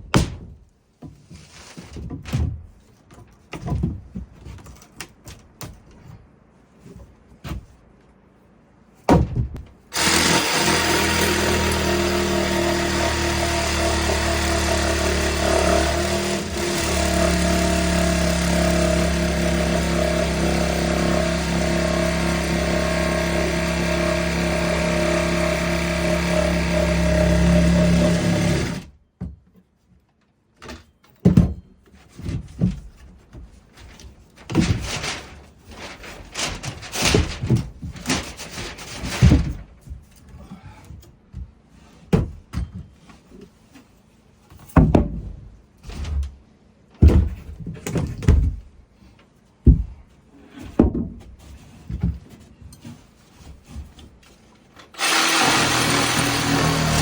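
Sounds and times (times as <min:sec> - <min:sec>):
knocks and thumps: 0:00.0 - 0:04.7, 0:09.1 - 0:19.6, 0:36.5 - 0:40.1, 0:44.6 - 0:46.3, 0:47.0 - 0:48.7, 0:49.6 - 0:52.4.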